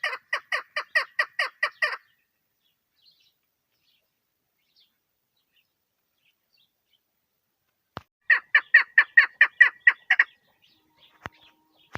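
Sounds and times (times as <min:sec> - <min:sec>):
partridge calling sharp notes: 0:00.0 - 0:02.2, 0:08.2 - 0:11.9.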